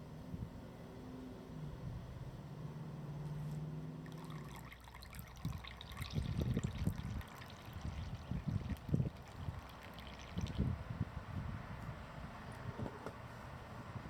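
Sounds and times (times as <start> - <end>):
water pouring in a trickle: 4.0 - 11.1.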